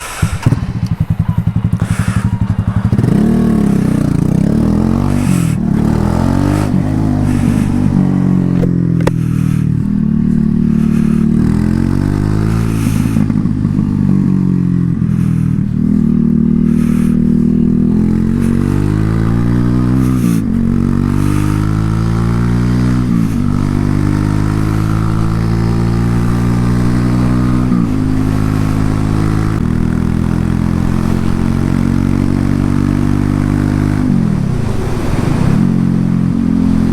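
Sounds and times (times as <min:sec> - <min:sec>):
motorcycle engine shifting gears: 0:00.0 - 0:36.9.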